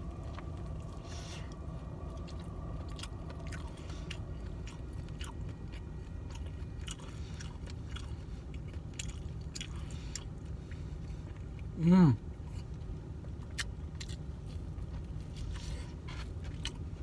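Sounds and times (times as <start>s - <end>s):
steady low hum: 0.0s - 17.0s
person chewing with wet mouth clicks: 2.1s - 10.3s.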